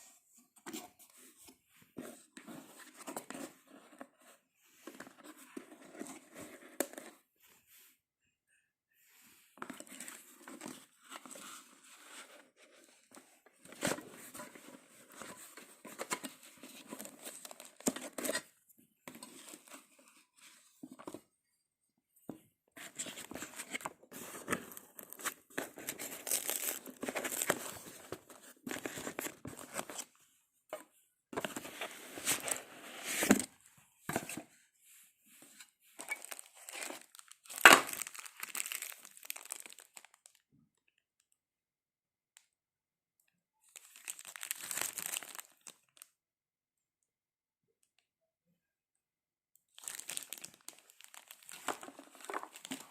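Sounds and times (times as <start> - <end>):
packaging crinkling and tearing: 25.0 - 27.8, 36.1 - 40.4, 43.8 - 46.0, 49.8 - 52.9.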